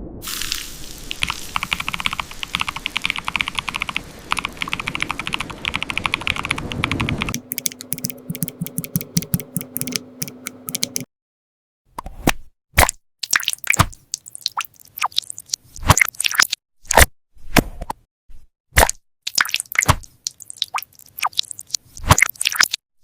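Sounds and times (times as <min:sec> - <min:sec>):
typing on computer keyboard: 0:01.2 - 0:11.1
faint steady hum: 0:07.4 - 0:11.0.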